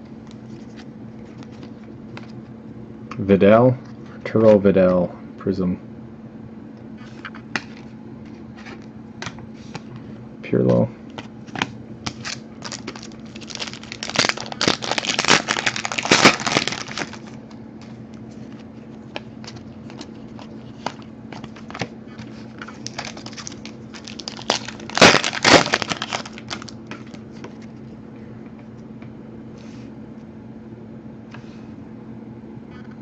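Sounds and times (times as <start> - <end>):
steady low hum: 0.0 - 33.0
wrappers crinkling and tearing: 12.1 - 17.4, 22.5 - 27.2.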